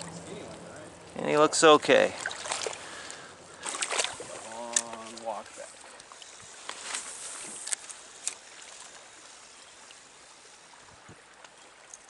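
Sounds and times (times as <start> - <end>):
stream water running: 0.0 - 12.0
short sharp clicks or splashes: 2.1 - 5.3.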